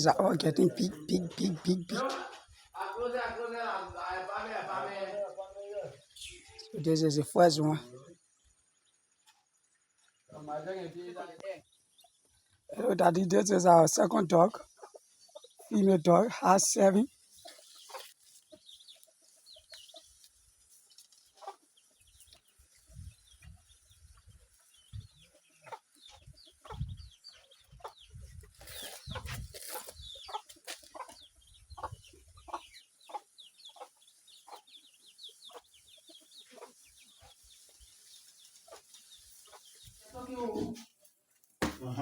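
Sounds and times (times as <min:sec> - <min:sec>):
chickens clucking: 0:00.0 - 0:04.2, 0:11.8 - 0:41.1.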